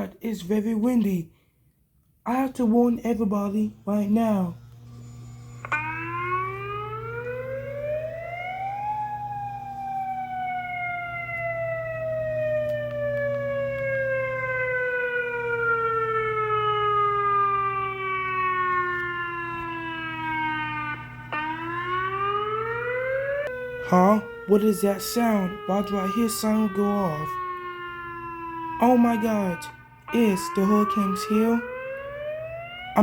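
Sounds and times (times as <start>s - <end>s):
warning siren winding up and down: 2.3s - 33.0s.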